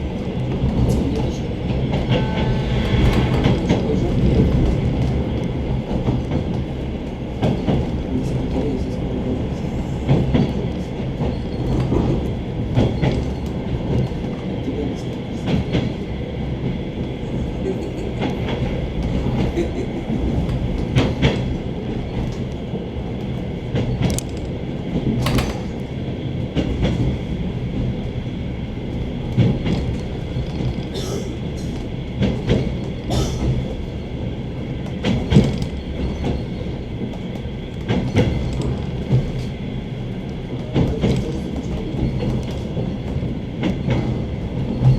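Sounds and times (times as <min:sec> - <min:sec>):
train wheels rumbling on rail: 0:00.0 - 0:44.9
wheels clacking over rail joints: 0:20.2 - 0:27.1, 0:29.1 - 0:44.9.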